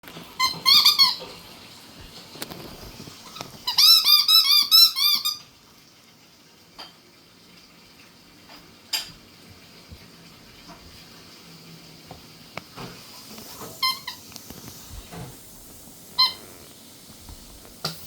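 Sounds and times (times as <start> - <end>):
puppy squeaky whines: 16.1 - 16.6.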